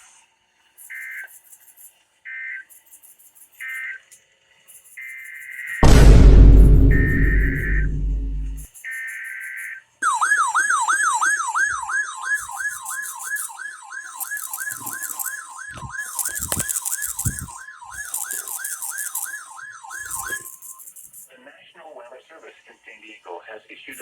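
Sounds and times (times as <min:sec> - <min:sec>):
digital data buzz: 0:00.8 - 0:02.0, 0:02.6 - 0:04.1, 0:04.7 - 0:10.2, 0:12.2 - 0:21.3
steady alarm tone: 0:05.6 - 0:21.3
siren-like sweeping tone: 0:05.8 - 0:08.7, 0:10.0 - 0:21.2.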